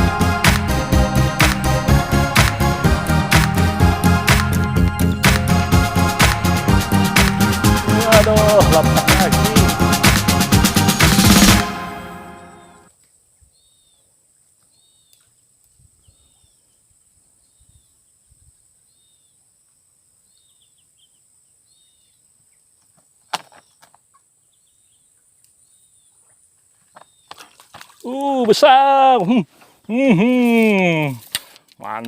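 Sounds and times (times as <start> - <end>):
bird chirping: 13.4 - 15.3, 20.2 - 26.2.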